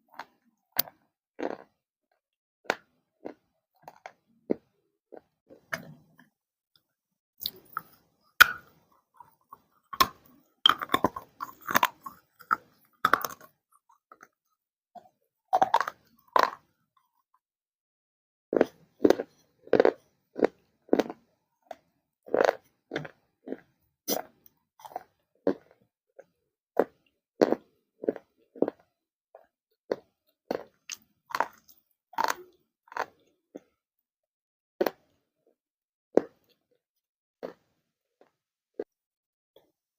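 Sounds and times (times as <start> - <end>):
chewing crunches: 0.2 - 1.8, 2.7 - 6.0, 7.4 - 14.4, 15.5 - 16.7, 18.6 - 33.8.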